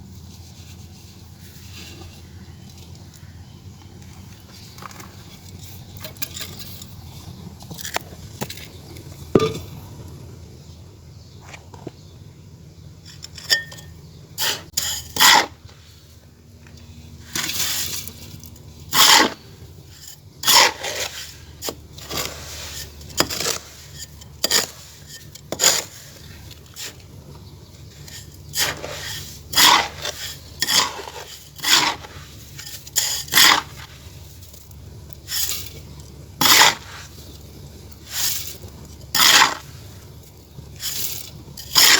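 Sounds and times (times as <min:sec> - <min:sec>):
clay scraping and crunching: 0:16.8 - 0:41.9.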